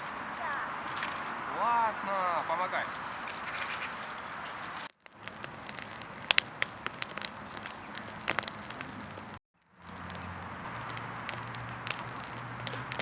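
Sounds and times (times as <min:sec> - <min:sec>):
soft hiss of kindling: 0:00.0 - 0:04.9
campfire crackling and popping: 0:00.0 - 0:13.0.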